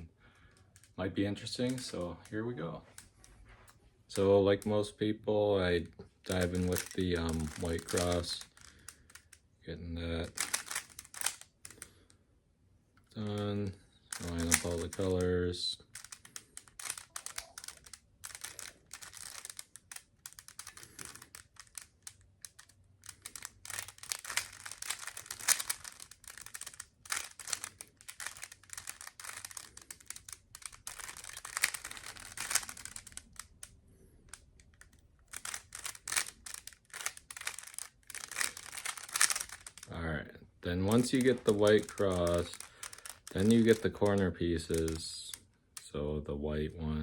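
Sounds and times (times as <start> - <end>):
puzzle cube plastic clicking: 6.3 - 9.4, 10.1 - 12.0, 13.0 - 39.9, 40.8 - 45.9.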